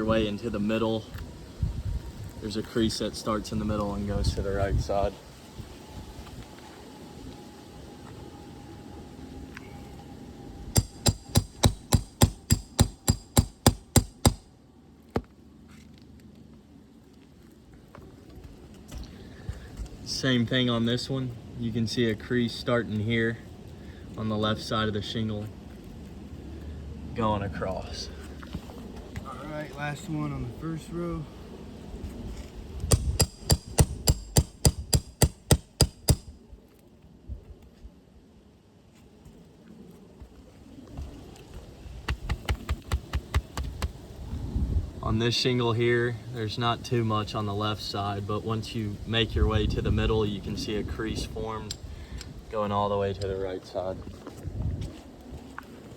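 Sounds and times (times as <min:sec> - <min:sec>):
metal tool tapping on roof: 0:10.8 - 0:14.4, 0:32.9 - 0:36.3
hammer striking: 0:10.8 - 0:14.5, 0:32.9 - 0:36.3.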